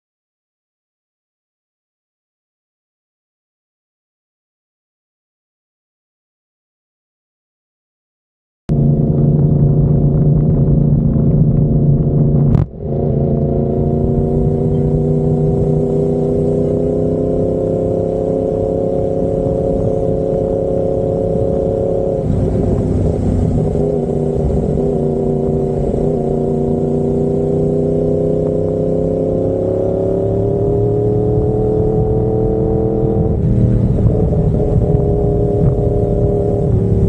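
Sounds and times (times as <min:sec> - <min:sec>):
motorcycle engine rising in pitch: 0:08.7 - 0:37.0.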